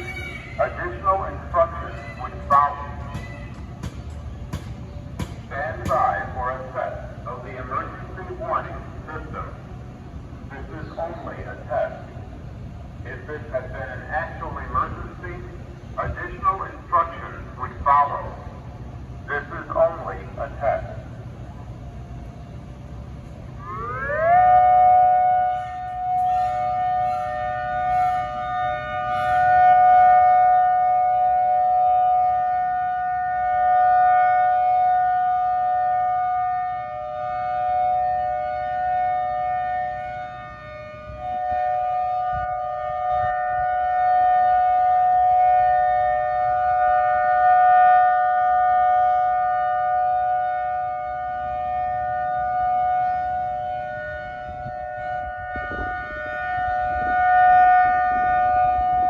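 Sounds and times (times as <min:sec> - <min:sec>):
tornado siren two-tone alert: 0:23.5 - 0:59.0.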